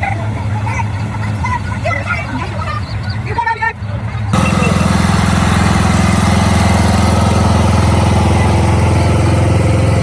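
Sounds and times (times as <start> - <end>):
small engine running: 4.3 - 10.0.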